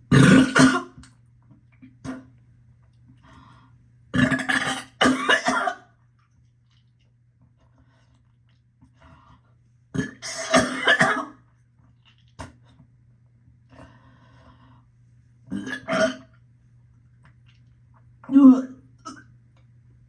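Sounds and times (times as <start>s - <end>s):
woman burping loudly: 0.1s - 1.0s, 4.2s - 5.7s, 10.0s - 11.2s, 15.5s - 16.3s.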